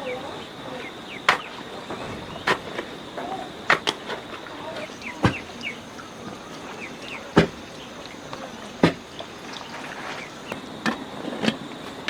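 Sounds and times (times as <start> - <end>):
sharp knocks: 7.3 - 7.7.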